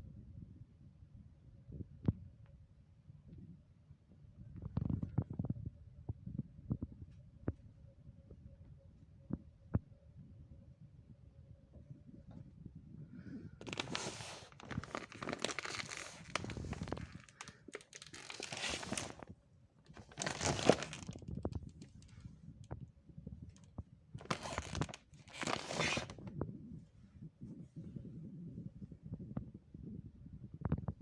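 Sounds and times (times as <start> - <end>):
plastic crinkling and rustling: 13.6 - 19.3, 19.9 - 22.3, 23.6 - 26.3.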